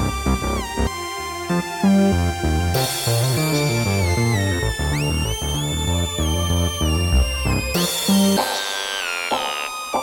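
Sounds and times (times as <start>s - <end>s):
rhythmic bass line: 0.0s - 0.9s, 1.5s - 8.4s
funky electronic beat: 2.8s - 10.0s.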